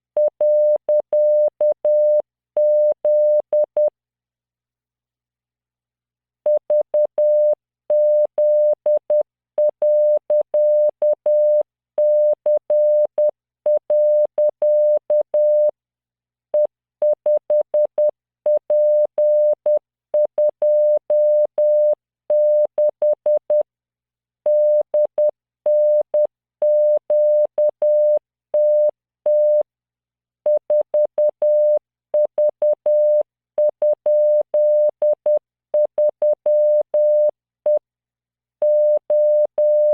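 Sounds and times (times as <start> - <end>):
morse code tone: 38.6 - 39.9.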